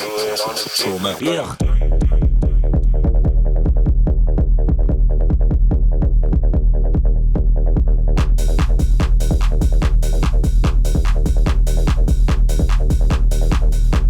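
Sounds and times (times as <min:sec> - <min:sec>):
electronic dance music: 0:00.0 - 0:01.7, 0:08.2 - 0:14.0.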